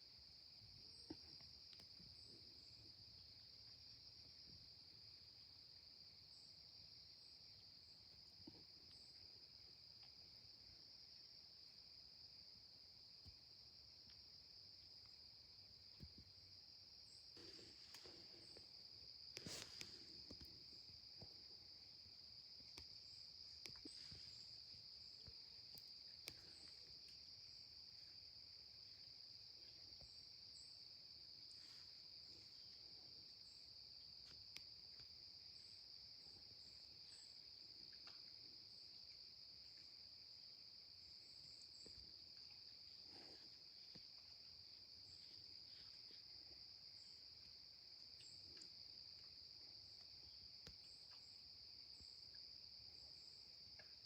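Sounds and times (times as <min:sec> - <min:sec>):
crickets chirping: 0:00.0 - 0:54.0
faint ticks: 0:01.0 - 0:02.8, 0:17.4 - 0:28.2, 0:34.2 - 0:35.2, 0:45.5 - 0:52.5, 0:53.6 - 0:54.0.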